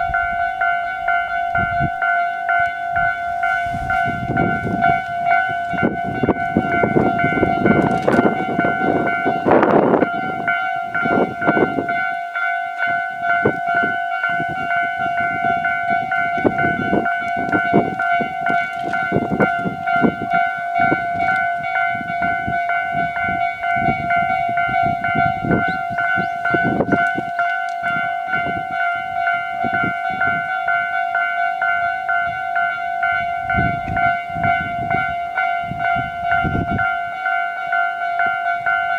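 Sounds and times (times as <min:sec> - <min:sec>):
level-crossing bell ringing: 0:00.0 - 0:38.9
train wheels knocking on rails: 0:02.6 - 0:12.1.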